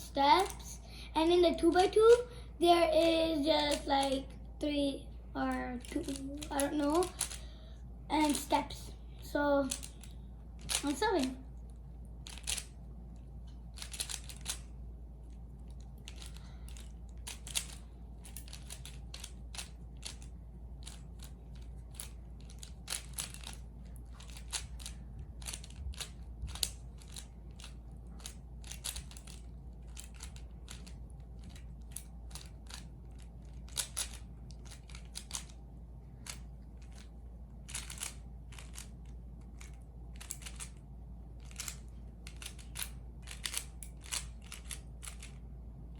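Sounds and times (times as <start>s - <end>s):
puzzle cube clicking: 5.8s - 7.4s, 9.7s - 11.4s, 12.2s - 12.8s, 13.8s - 14.7s, 16.0s - 35.6s, 36.2s - 40.8s, 41.4s - 45.4s.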